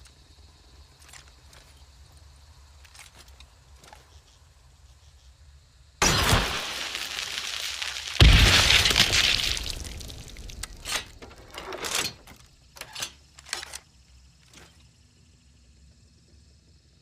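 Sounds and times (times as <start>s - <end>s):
clinks and rattles of debris: 0.8s - 2.0s, 6.0s - 14.8s
explosion blast: 6.0s - 10.5s.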